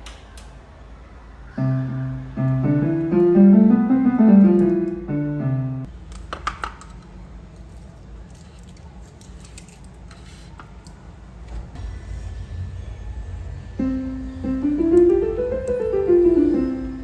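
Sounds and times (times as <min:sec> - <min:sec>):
electric piano chords: 0:01.6 - 0:05.9, 0:13.8 - 0:17.0.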